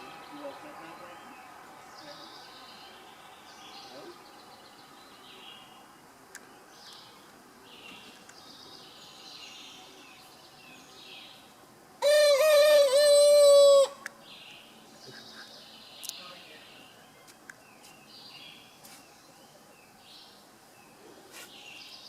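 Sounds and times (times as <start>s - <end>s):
birds chirping: 0.0s - 22.0s
rooster crowing: 12.0s - 14.1s.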